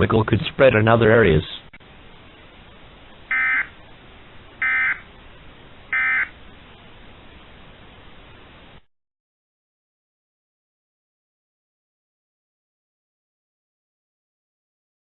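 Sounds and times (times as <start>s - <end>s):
faint radio hiss: 0.0s - 8.9s
warbling data tone bursts: 3.3s - 3.7s, 4.6s - 5.1s, 5.9s - 6.4s.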